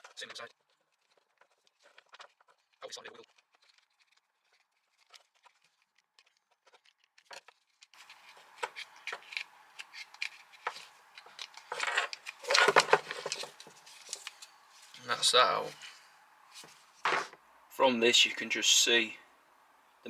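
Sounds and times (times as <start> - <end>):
clicking and scraping of parts: 5.0 - 15.0, 15.7 - 17.4.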